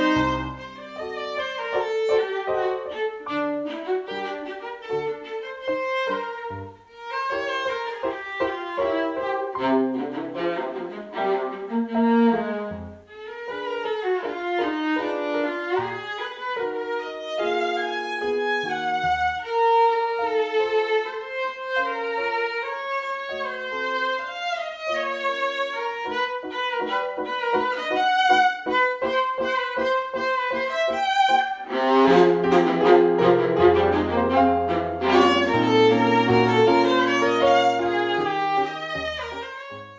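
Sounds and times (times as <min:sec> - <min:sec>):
lower accompaniment: 0:00.0 - 0:03.1, 0:29.0 - 0:39.8
bowed violin melody: 0:00.0 - 0:39.9.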